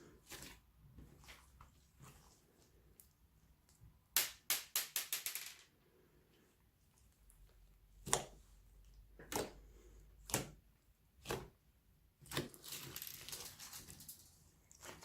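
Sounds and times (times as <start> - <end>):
slime squishing with clicks and pops: 7.0 - 12.7.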